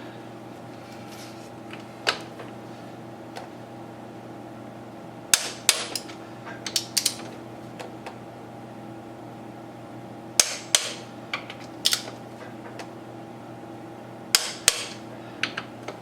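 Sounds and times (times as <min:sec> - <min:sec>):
steady hum: 0:00.0 - 0:16.0
hand tools clicking on metal: 0:05.4 - 0:07.2.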